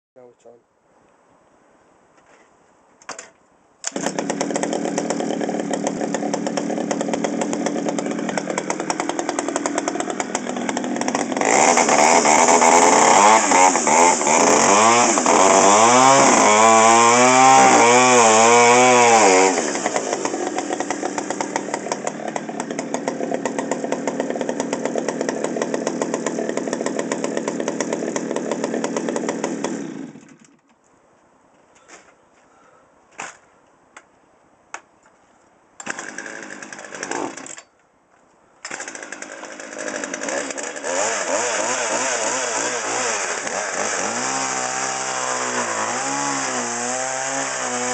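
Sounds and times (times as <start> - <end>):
chainsaw idling and revving: 3.9 - 30.5, 35.8 - 37.6, 38.6 - 47.9.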